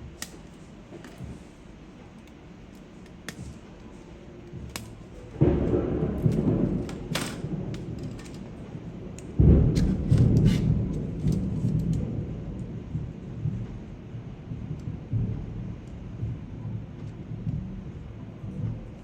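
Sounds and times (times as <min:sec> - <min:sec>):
rumble of thunder: 0:04.5 - 0:19.0.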